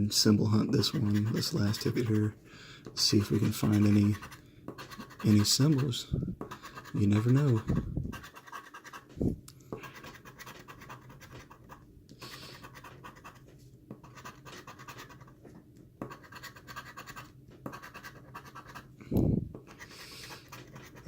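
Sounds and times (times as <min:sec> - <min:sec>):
lottery ticket being scratched: 0:00.8 - 0:02.3, 0:03.0 - 0:09.1, 0:09.8 - 0:15.3, 0:16.0 - 0:18.9.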